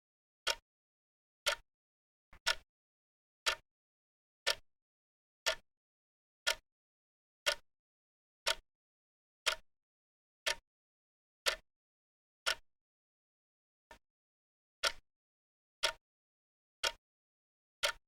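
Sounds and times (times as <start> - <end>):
clock ticking: 1.4 - 1.6, 2.4 - 2.6, 3.4 - 3.6, 5.4 - 5.6, 9.4 - 9.6, 11.4 - 11.6.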